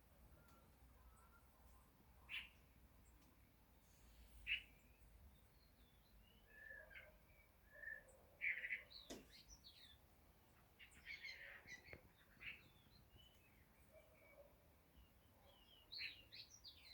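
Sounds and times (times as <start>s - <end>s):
small birds chirping faintly: 0.0s - 16.9s.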